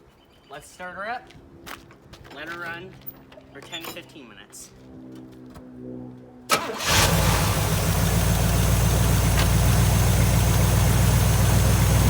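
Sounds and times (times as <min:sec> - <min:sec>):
car engine cranking and idling: 0:06.5 - 0:12.0.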